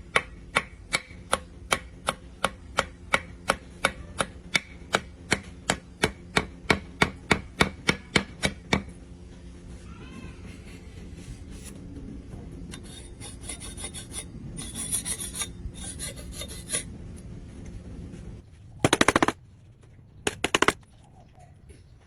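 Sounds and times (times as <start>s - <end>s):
steady hum: 10.7s - 20.9s
rasping on wood: 12.8s - 16.9s, 18.9s - 19.4s
rapid sharp clicks: 18.8s - 19.4s, 20.3s - 20.8s.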